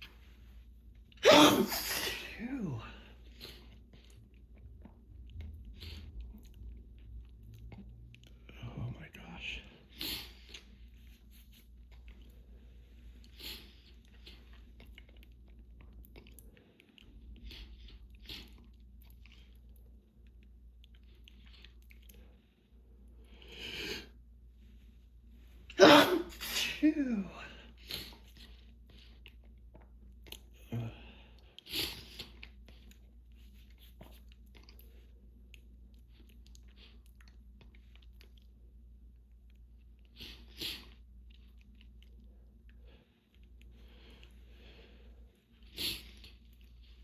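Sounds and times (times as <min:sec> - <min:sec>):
person sniffling: 0:01.2 - 0:02.5.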